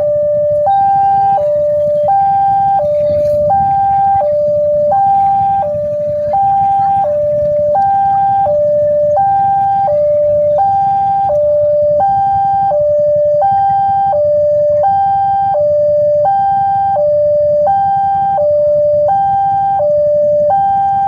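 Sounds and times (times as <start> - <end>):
two-tone crossing alarm: 0.0 - 21.0
low rumble: 0.5 - 12.0.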